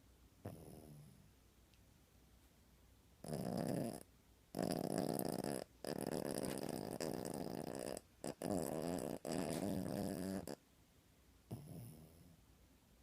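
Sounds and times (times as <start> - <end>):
puppy snoring: 0.4 - 1.3, 3.2 - 10.6, 11.5 - 12.4.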